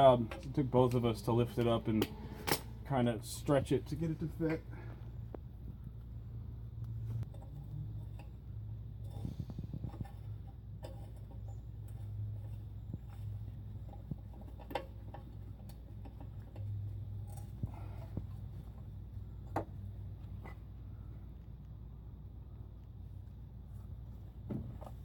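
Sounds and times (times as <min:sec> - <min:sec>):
steady low hum: 0:00.0 - 0:25.0
tools clicking and knocking: 0:09.1 - 0:17.6.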